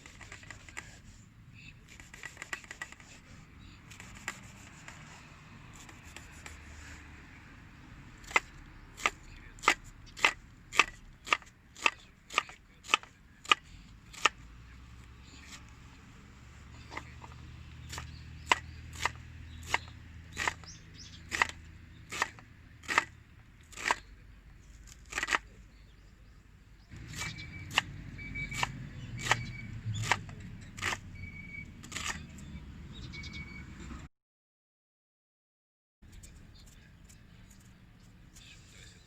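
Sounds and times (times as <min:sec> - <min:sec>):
knife chopping on cutting board: 0:08.2 - 0:14.4, 0:17.9 - 0:23.1, 0:27.0 - 0:31.0.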